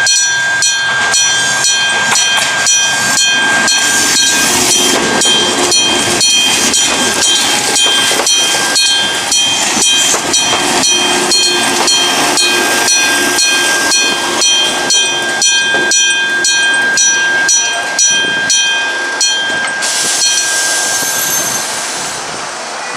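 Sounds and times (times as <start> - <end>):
level-crossing alarm ringing: 0.0 - 21.8
train running through station: 0.0 - 22.9
hiss: 19.8 - 22.5.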